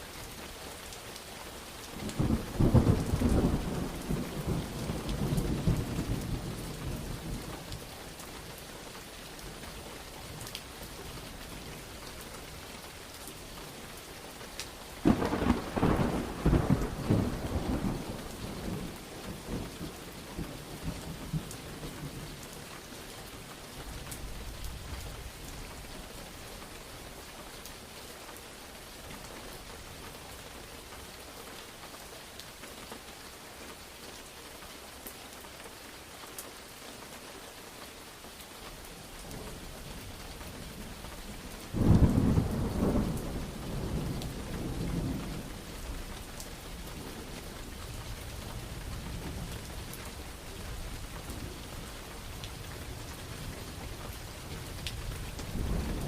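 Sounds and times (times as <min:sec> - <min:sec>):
heavy rain falling: 0:00.0 - 0:56.0
thunder rumble: 0:15.0 - 0:22.2, 0:41.7 - 0:46.1.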